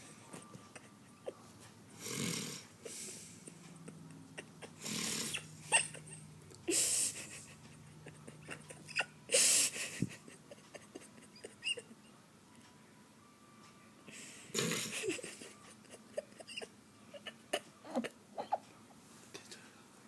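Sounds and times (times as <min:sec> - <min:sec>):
woman snoring: 0:02.0 - 0:02.7, 0:04.8 - 0:05.5, 0:14.5 - 0:14.9.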